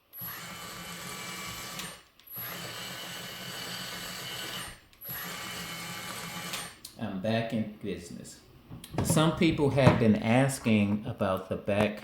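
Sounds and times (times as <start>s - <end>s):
toy loader motor whirring: 0.1s - 6.8s.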